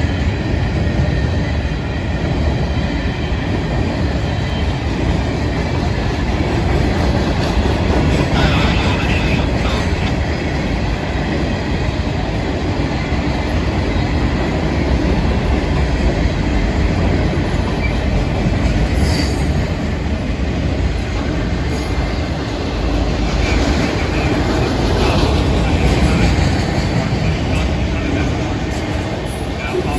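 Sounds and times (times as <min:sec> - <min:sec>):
freight train cars rumbling: 0:00.0 - 0:29.9.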